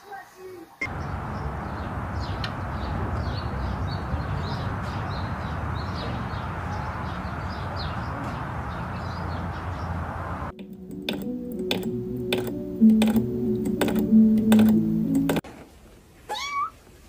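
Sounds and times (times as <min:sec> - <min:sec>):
small birds chirping: 0:00.1 - 0:10.5.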